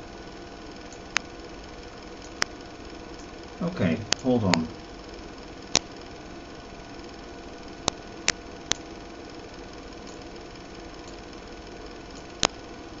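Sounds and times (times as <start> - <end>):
faint steady tones: 0.0 - 13.0
steady hum: 0.0 - 13.0
sharp clicks: 0.8 - 1.3, 2.2 - 3.4, 4.0 - 4.8, 5.6 - 6.0, 7.8 - 9.0, 10.0 - 10.3, 11.0 - 11.4, 12.1 - 12.6.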